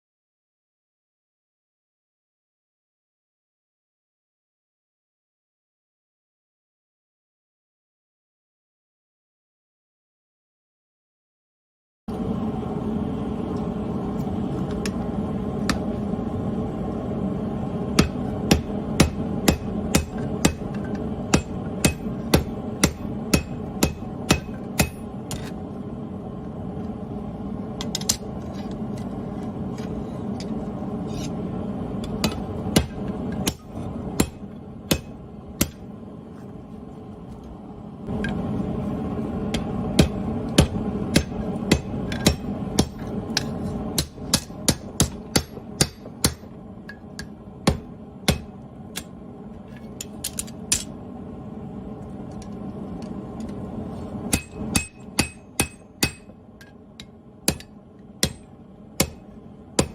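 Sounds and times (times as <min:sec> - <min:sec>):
hammer striking metal: 0:18.0 - 0:25.5, 0:32.0 - 0:35.8, 0:39.5 - 0:49.1, 0:54.3 - 0:59.9.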